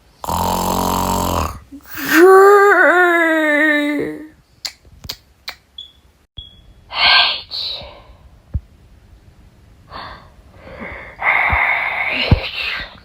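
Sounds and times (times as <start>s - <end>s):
person snoring: 0.1s - 2.7s
person breathing sleepily: 9.9s - 12.2s.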